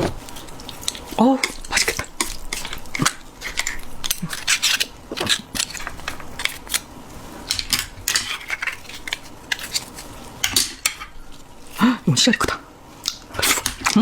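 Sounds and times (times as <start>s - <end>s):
utensils and shells clinking on dishes: 0.0s - 6.8s, 7.4s - 14.0s.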